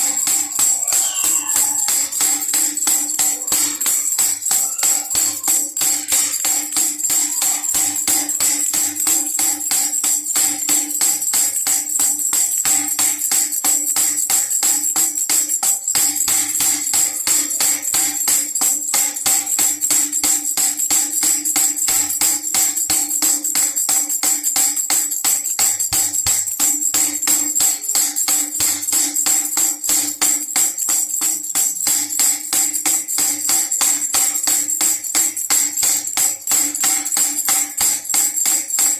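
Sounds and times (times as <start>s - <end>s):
baby rattle jingling: 0.0s - 38.9s.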